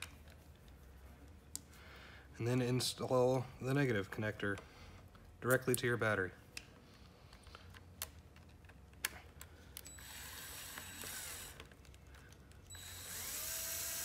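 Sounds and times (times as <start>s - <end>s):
rapid ratchet clicking: 12.7s - 14.0s.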